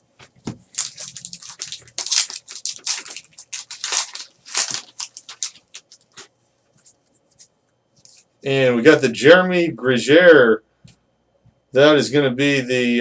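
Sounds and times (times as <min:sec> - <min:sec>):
plastic wrapper crinkling: 0:00.6 - 0:06.4.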